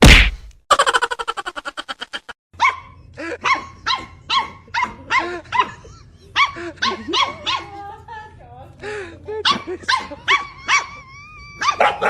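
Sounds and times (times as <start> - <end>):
dog yapping: 2.6 - 5.8, 9.5 - 12.0.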